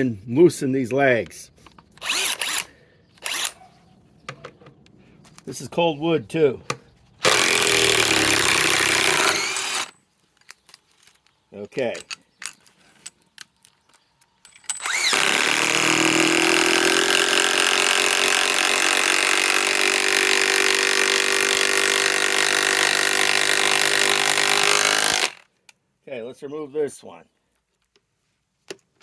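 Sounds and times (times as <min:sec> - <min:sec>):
cordless impact wrench running: 0:02.0 - 0:03.6, 0:07.2 - 0:10.0, 0:14.6 - 0:25.5.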